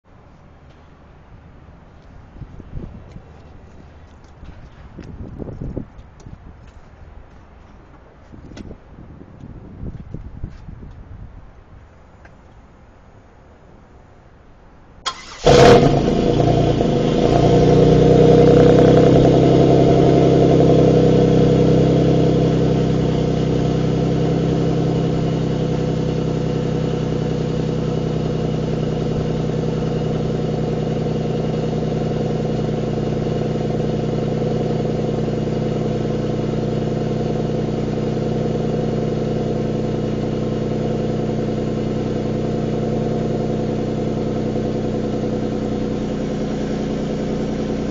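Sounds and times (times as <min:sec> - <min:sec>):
car engine starting and idling: 0:15.0 - 0:47.9.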